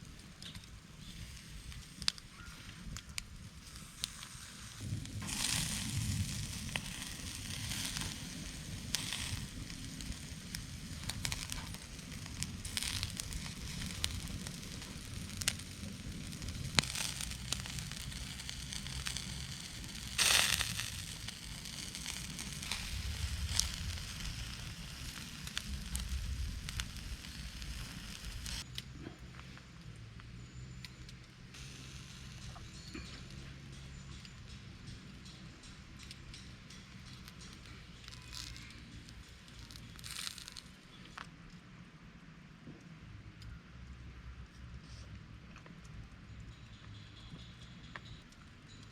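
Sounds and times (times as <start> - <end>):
hiss: 0.0 - 28.7, 31.6 - 33.4
wood campfire crackling: 0.0 - 41.7
low steady rumble: 4.4 - 40.0.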